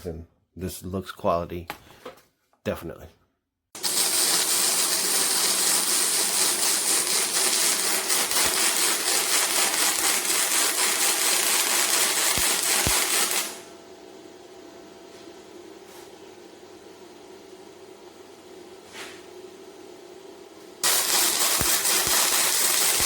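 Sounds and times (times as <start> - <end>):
welding arc crackling: 3.8 - 13.7, 20.8 - 23.0.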